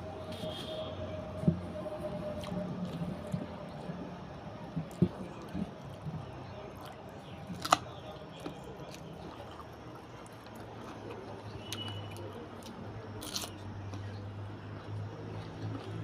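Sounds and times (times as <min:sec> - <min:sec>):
person chewing and crunching: 0:02.3 - 0:16.0.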